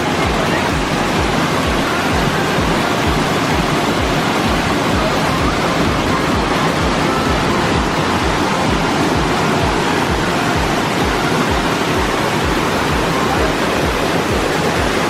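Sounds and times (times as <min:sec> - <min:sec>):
rushing water: 0:00.0 - 0:15.0.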